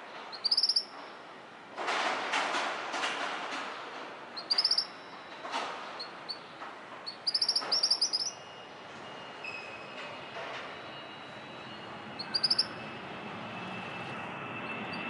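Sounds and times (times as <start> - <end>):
rushing background noise: 0.0 - 15.0
small bird chirping trills: 0.3 - 0.9, 4.4 - 5.2, 6.0 - 8.6, 12.2 - 12.8.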